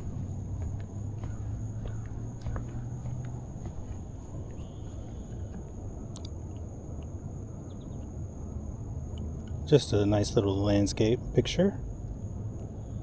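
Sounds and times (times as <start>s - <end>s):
steady low rumble: 0.0s - 13.0s
thin high hum: 0.0s - 13.0s
faint chirp: 4.4s - 5.5s, 7.0s - 8.1s.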